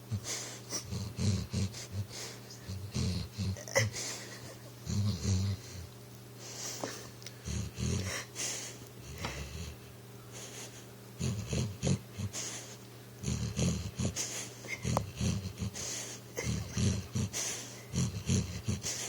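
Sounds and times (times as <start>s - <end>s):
dog snoring and puffing: 0.0s - 19.0s.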